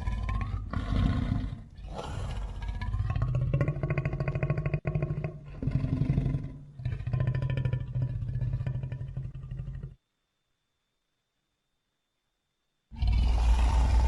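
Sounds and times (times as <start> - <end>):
creature growl-roar: 0.0 - 10.0, 12.9 - 14.0.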